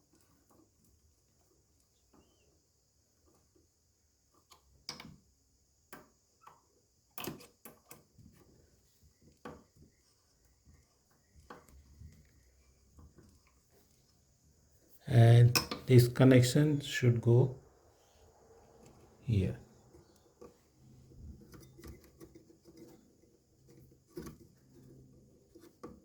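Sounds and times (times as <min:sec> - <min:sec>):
small parts clicking and knocking: 0:04.3 - 0:08.5, 0:15.5 - 0:15.9.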